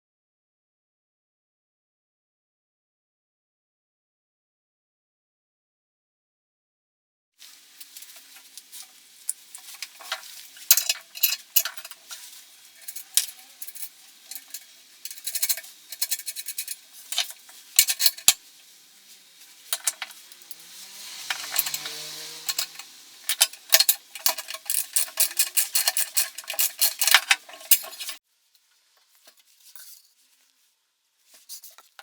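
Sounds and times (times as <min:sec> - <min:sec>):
packaging rustling and crinkling: 0:07.4 - 0:20.7
parts clicking and clinking: 0:07.8 - 0:28.2.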